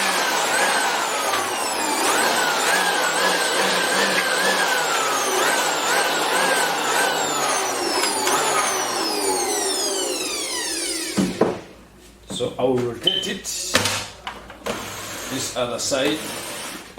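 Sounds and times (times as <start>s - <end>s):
blower motor whine: 0.0s - 11.8s.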